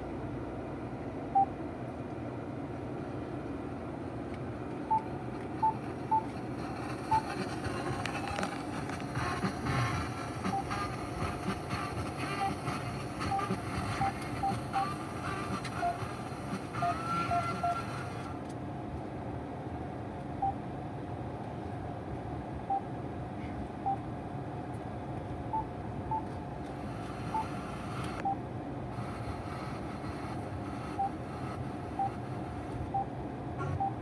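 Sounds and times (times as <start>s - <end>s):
low cabin hum: 0.0s - 34.0s
short electronic beeps: 13.3s - 15.0s, 31.0s - 31.2s, 32.0s - 32.2s, 32.9s - 34.0s.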